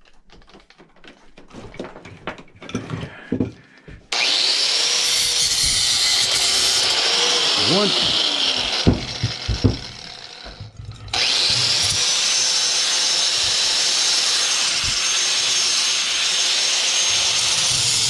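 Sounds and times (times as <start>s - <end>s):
electric power tool cutting: 4.1s - 18.0s
knocks: 8.0s - 12.0s.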